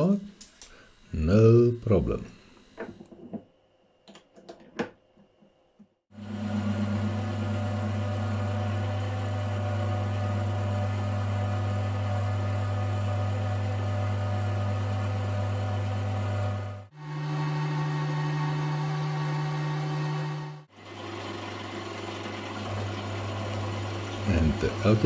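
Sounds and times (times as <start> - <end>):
lathe motor humming: 14.6 - 20.7, 23.2 - 25.0.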